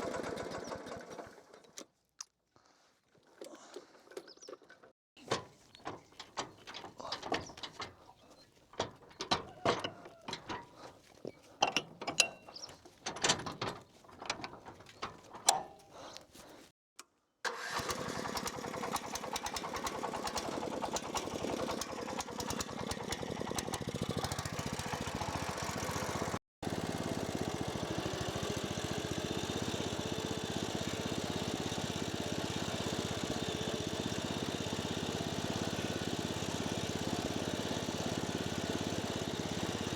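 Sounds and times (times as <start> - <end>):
small petrol engine running: 0.0 - 1.7, 17.5 - 39.9
sharp clicks and knocks: 5.2 - 11.0, 11.6 - 16.3.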